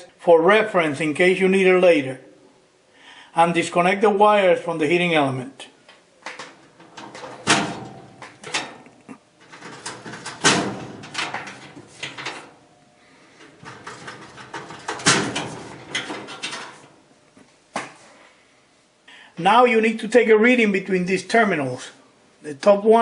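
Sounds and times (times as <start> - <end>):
metallic clicks and scrapes: 6.3 - 12.6, 13.4 - 17.0.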